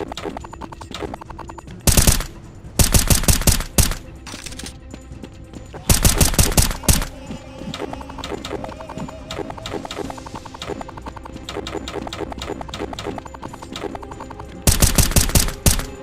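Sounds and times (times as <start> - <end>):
rhythmic background music: 0.0 - 16.0
automatic gunfire bursts: 1.9 - 4.0, 5.9 - 7.1, 14.7 - 16.0.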